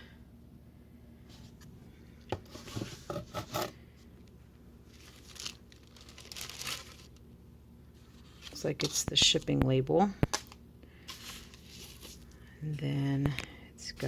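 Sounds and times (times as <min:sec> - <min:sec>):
faint low hum: 0:00.0 - 0:14.0
paper packaging rustling: 0:04.9 - 0:07.2, 0:08.0 - 0:09.4, 0:10.3 - 0:12.4.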